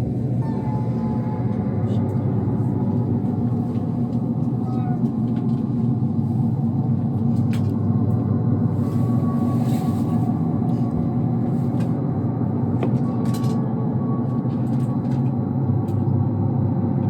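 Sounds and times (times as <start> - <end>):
steady low rumble: 0.0 - 17.0
faint high tone: 0.4 - 1.7.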